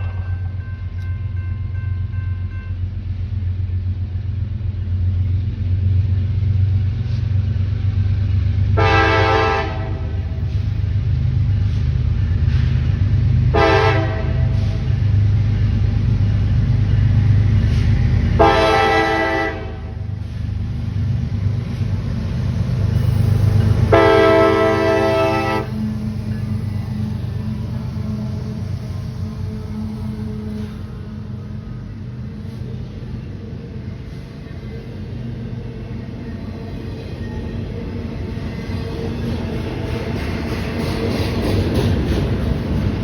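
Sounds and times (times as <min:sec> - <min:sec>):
passing train rumble: 0:00.0 - 0:43.0
locomotive air horn blasts: 0:08.8 - 0:10.4, 0:13.5 - 0:14.8, 0:18.4 - 0:20.2, 0:23.9 - 0:25.9.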